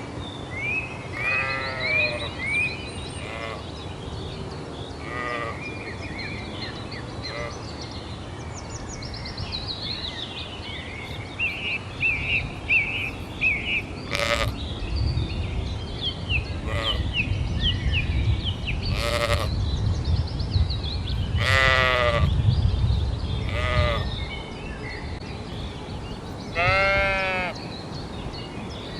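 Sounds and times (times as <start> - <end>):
sheep bleating: 1.2 - 2.2, 14.1 - 14.6, 18.9 - 19.5, 26.5 - 27.6.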